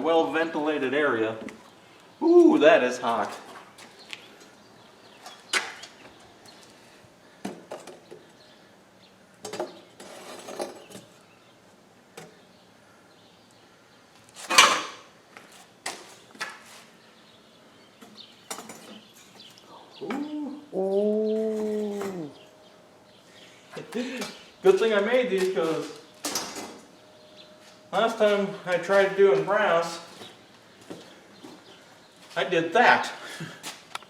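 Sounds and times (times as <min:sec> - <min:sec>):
metal tools clinking: 0:14.4 - 0:15.0.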